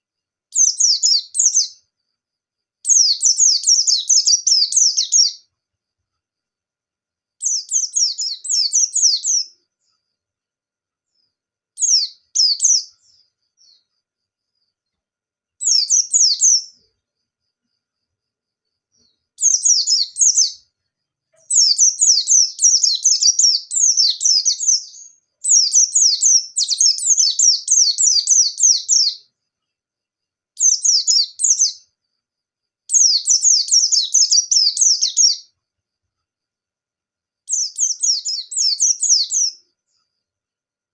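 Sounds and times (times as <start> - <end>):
bird chirping rapidly: 0.5 - 1.8, 2.8 - 5.4, 7.4 - 9.5, 11.8 - 13.8, 15.6 - 16.8, 19.4 - 20.6, 21.5 - 29.3, 30.6 - 31.8, 32.9 - 35.5, 37.5 - 39.6.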